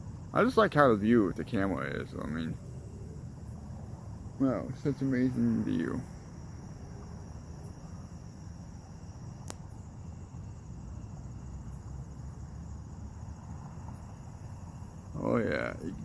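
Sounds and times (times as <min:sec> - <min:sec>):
crickets chirping: 0:00.0 - 0:16.0
sharp click: 0:09.4 - 0:09.7.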